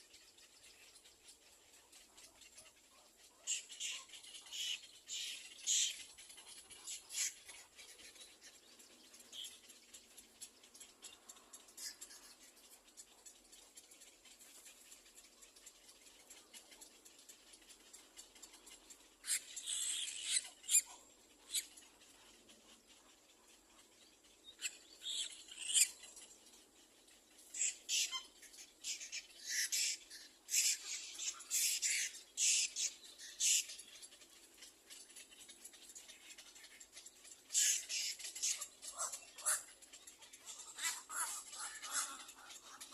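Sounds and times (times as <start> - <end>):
chicks squeaky begging cries: 37.5 - 39.8, 40.5 - 42.9.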